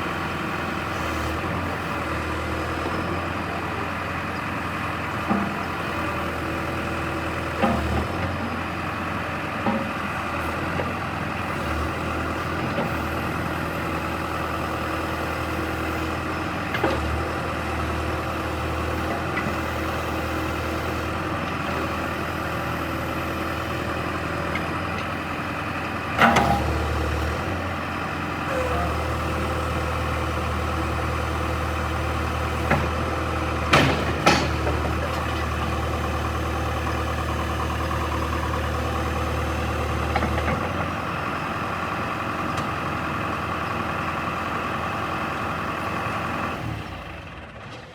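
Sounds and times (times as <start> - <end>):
diesel engine idling: 0.0 - 47.7
sharp clunks and knocks: 33.7 - 35.5.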